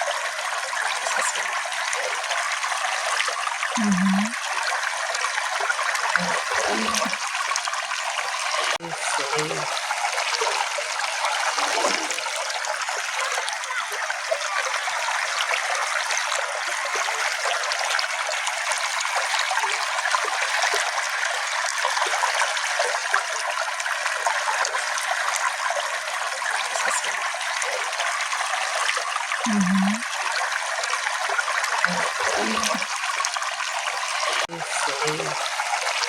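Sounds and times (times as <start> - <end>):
brook babbling: 0.0 - 36.0.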